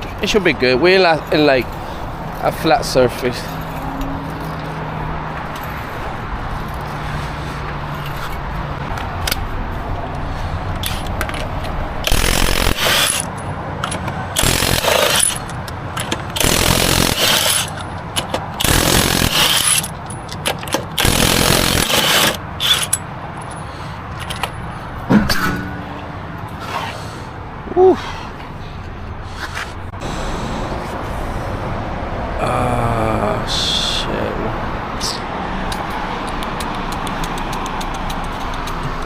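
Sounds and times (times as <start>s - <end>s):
impact wrench hammering: 12.0s - 23.6s, 25.1s - 26.1s
small clicks: 35.7s - 38.9s.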